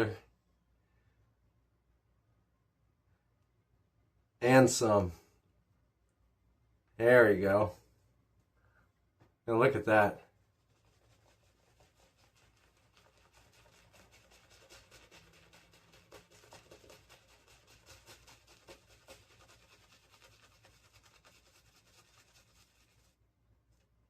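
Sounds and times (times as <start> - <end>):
shaving brush working lather: 10.6 - 23.2.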